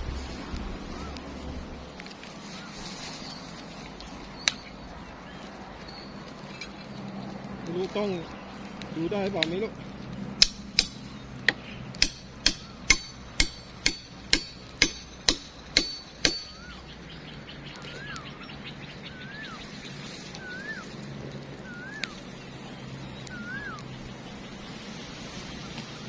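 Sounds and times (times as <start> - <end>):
hammer blows ringing: 10.4 - 11.1, 12.0 - 16.6.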